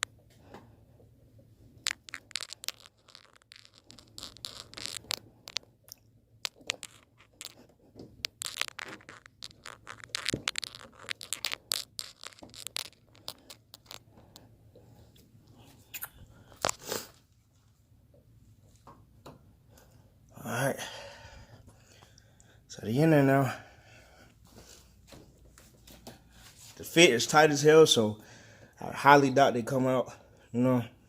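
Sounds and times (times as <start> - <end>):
hands clicking and scraping metal parts: 1.9 - 5.7, 6.4 - 14.1.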